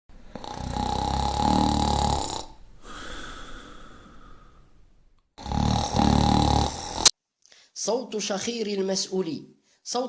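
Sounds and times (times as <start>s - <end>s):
person snoring: 0.3s - 4.6s, 5.4s - 7.1s.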